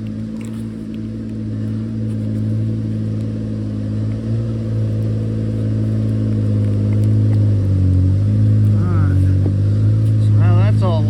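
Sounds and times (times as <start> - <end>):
engine running steadily: 0.0 - 11.0.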